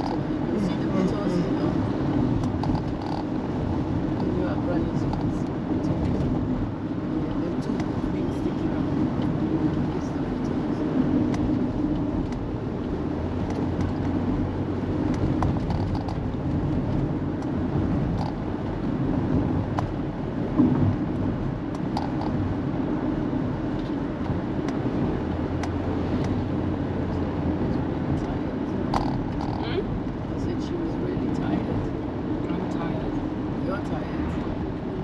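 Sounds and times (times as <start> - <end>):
car engine and tyre drone: 0.0 - 35.0
small clicks and rattles: 2.4 - 3.3, 15.1 - 17.5, 18.1 - 18.4, 21.8 - 22.4.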